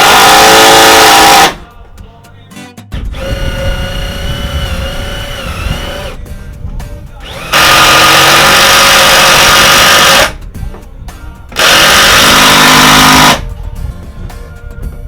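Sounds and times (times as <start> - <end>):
power drill driving screws into metal: 0.0 - 1.6, 3.1 - 6.2, 7.2 - 10.4, 11.6 - 13.4.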